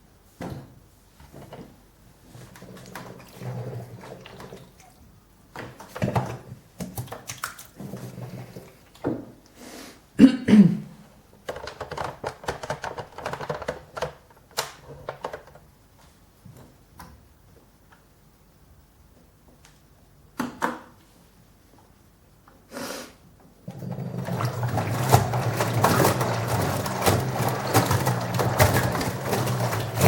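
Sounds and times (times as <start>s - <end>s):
clunks and clatter of handling: 24.3s - 30.0s.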